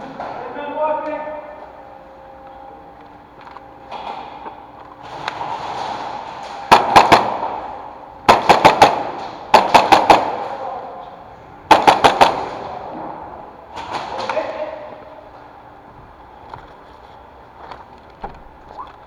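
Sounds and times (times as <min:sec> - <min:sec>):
airsoft gun firing bursts: 0:06.7 - 0:10.6, 0:11.7 - 0:12.9.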